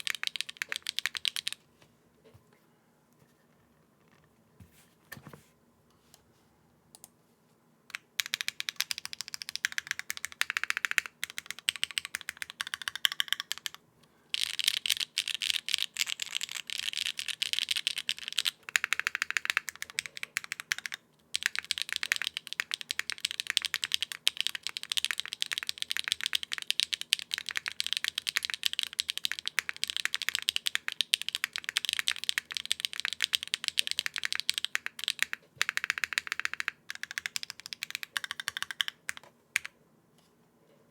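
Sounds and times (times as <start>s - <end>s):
mechanical keyboard typing: 0.0s - 1.6s, 7.9s - 13.8s, 14.4s - 39.8s.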